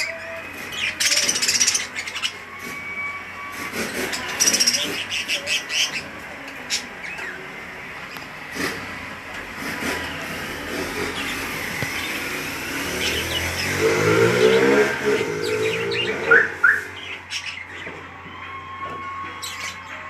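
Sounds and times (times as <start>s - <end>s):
lovebirds chirping and twittering: 0.0s - 8.8s, 9.7s - 18.0s, 19.2s - 20.0s
passing vehicle engine hum: 7.6s - 17.3s.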